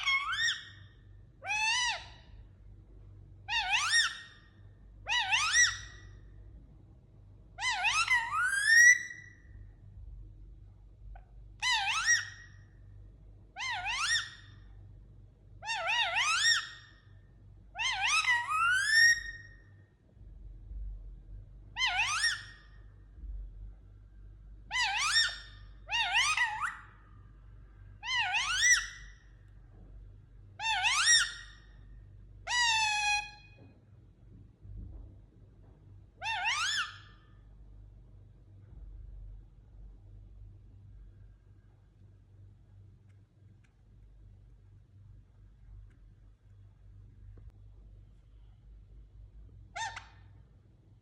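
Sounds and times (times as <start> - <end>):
parrot whistle-like call: 3.5 - 4.4, 5.1 - 6.0, 7.6 - 9.3, 11.6 - 12.5, 13.6 - 14.4, 15.6 - 16.9, 17.8 - 19.5, 21.8 - 22.6, 24.7 - 27.0, 28.0 - 29.2, 30.6 - 31.6, 32.5 - 33.5, 36.2 - 37.3.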